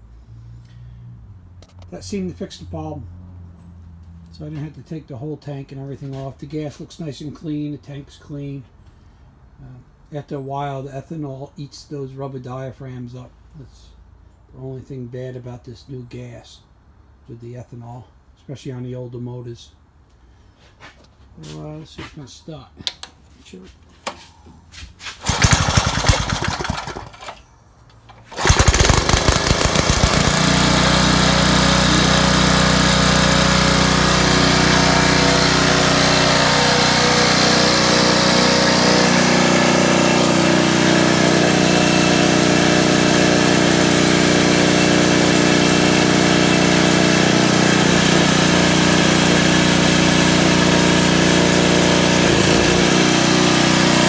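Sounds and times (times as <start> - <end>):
small engine running: 25.2 - 27.4, 28.3 - 54.0
recoil starter pull: 25.2 - 27.5, 28.1 - 54.0.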